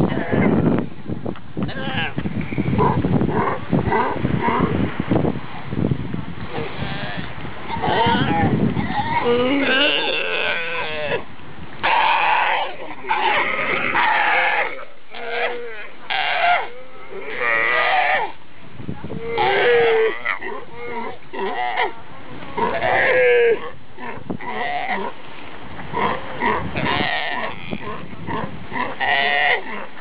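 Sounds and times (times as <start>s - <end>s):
sea lions calling: 6.6s - 18.4s, 19.2s - 22.0s, 22.6s - 25.2s, 25.9s - 30.0s.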